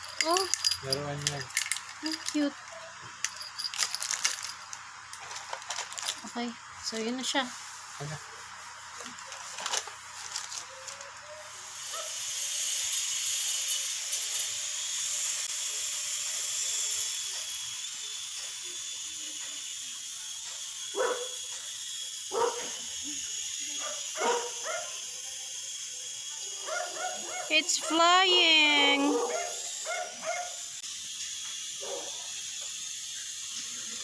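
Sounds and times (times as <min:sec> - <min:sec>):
dog barking: 0:11.9 - 0:12.2, 0:21.0 - 0:21.4, 0:22.3 - 0:22.8, 0:23.8 - 0:25.0, 0:26.6 - 0:27.5, 0:29.1 - 0:30.6, 0:31.8 - 0:32.1.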